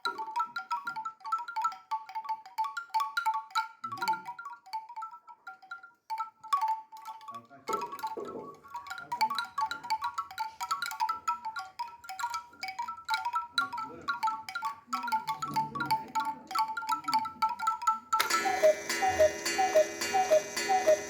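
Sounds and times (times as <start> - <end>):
music box tinkling tune: 0.0 - 21.0
fuller sound with steady tones: 18.2 - 21.0.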